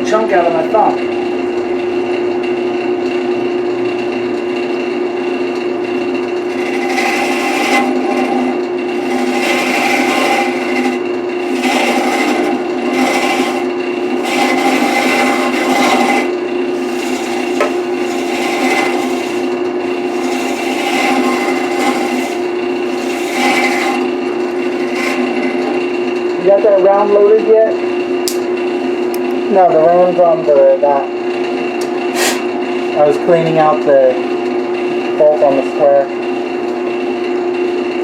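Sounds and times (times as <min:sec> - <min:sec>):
wood lathe motor hum: 0:00.0 - 0:38.0
turning tool scraping wood: 0:05.9 - 0:27.6, 0:32.1 - 0:34.0, 0:34.9 - 0:36.2.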